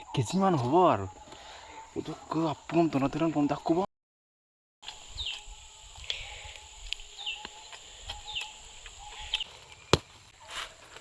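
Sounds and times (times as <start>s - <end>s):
high insect drone: 4.8s - 10.0s
bird chirping: 5.0s - 10.1s.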